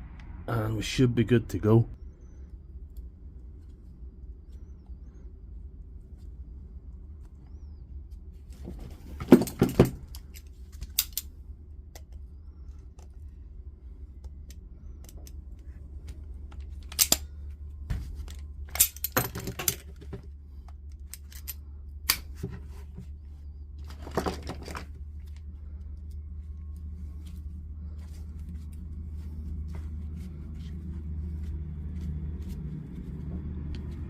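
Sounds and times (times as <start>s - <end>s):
steady low hum: 0.0s - 34.0s
metal tools clicking and clattering: 18.3s - 20.2s, 21.0s - 22.2s.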